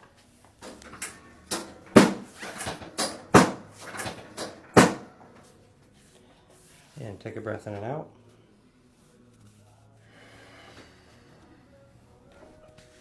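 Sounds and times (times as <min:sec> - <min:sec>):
sharp thumps and clacks: 0:00.6 - 0:05.4.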